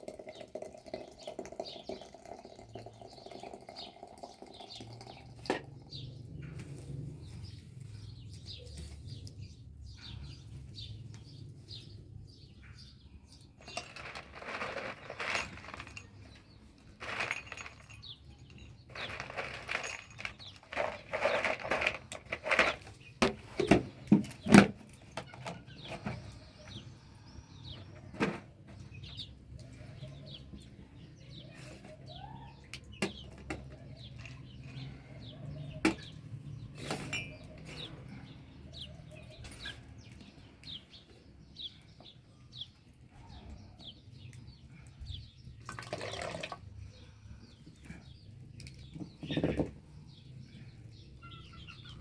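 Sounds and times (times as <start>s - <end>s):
small birds chirping: 0.0s - 52.0s
sharp clinks and knocks: 13.6s - 22.9s, 36.7s - 38.1s.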